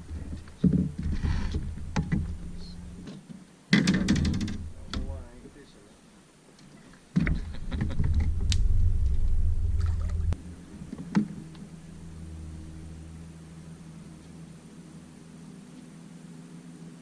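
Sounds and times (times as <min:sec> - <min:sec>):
boat motor running: 0:08.0 - 0:15.2.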